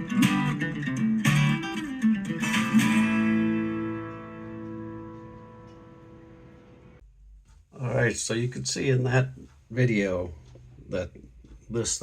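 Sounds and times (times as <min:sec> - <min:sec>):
guitar chords through speakers: 0:00.0 - 0:07.0.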